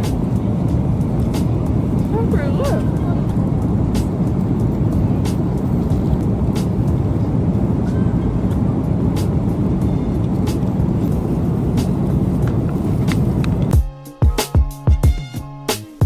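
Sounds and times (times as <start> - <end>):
vehicle rumble inside cabin: 0.0 - 13.8.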